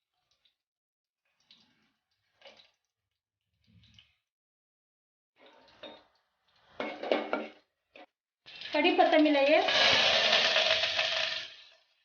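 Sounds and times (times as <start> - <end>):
seeds frying in hot oil: 8.5 - 12.0.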